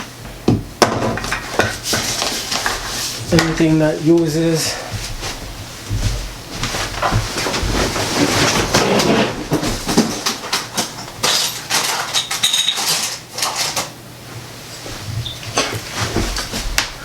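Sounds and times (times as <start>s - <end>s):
rustling: 4.7s - 10.0s.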